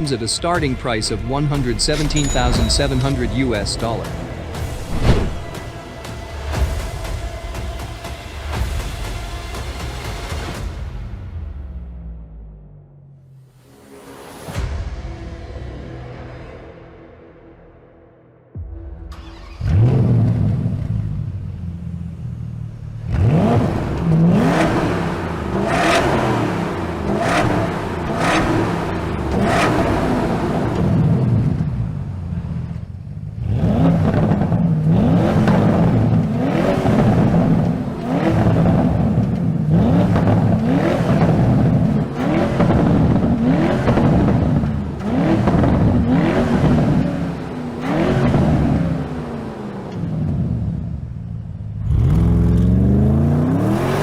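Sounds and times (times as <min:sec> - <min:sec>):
car engine revving: 0:00.0 - 0:06.6, 0:19.2 - 0:54.0.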